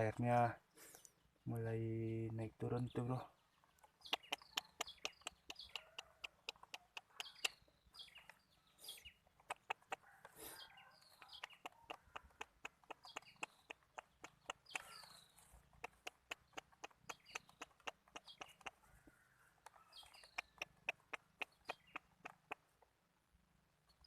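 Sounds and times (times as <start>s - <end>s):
chickens clucking and peeping: 3.0s - 22.8s
sharp clicks: 3.8s - 8.4s, 9.4s - 10.0s, 11.2s - 15.0s, 15.7s - 18.8s, 19.6s - 22.9s.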